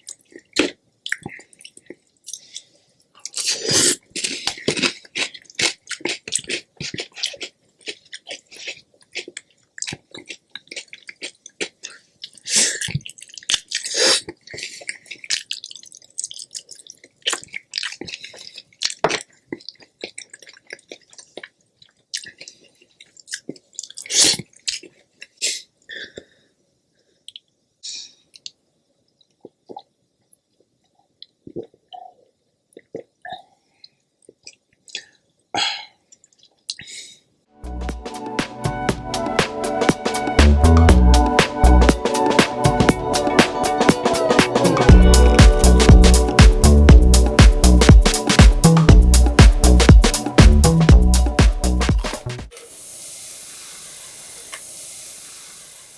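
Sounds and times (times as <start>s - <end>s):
chewing and mouth clicks: 0.0s - 25.4s.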